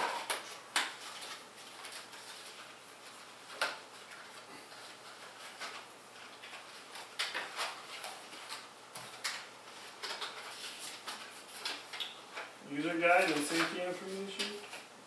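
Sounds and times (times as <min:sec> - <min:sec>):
packaging rustling and clicking: 0:03.4 - 0:12.5.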